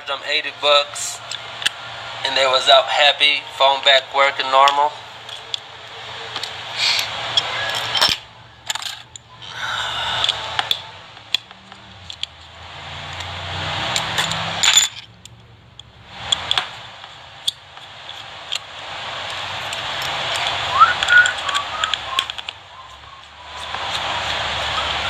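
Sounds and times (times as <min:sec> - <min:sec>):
rushing noise: 0:00.0 - 0:25.0
small metal tools clicking: 0:06.3 - 0:12.5, 0:13.1 - 0:24.7.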